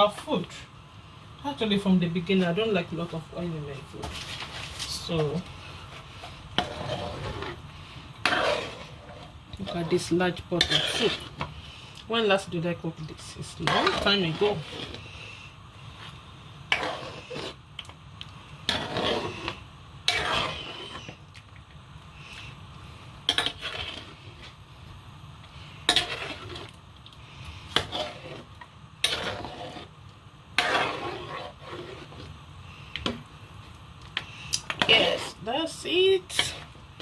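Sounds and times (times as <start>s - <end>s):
steady low hum: 0.0s - 37.0s
spoon scraping metal pot: 6.2s - 7.6s, 8.2s - 11.5s, 13.4s - 15.0s, 16.7s - 17.6s, 18.6s - 21.2s, 23.3s - 24.4s, 25.8s - 26.8s, 27.7s - 29.9s, 30.6s - 32.3s, 34.2s - 35.4s, 36.3s - 36.7s.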